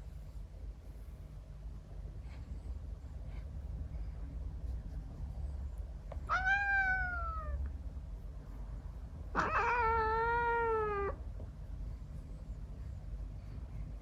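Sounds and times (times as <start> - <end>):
cat meowing: 6.2 - 7.6, 9.3 - 11.2.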